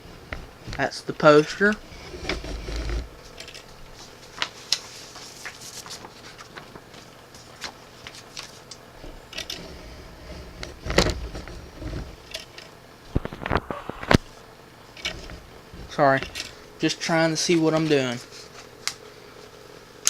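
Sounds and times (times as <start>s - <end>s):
paper rustling and crinkling: 1.6s - 8.8s.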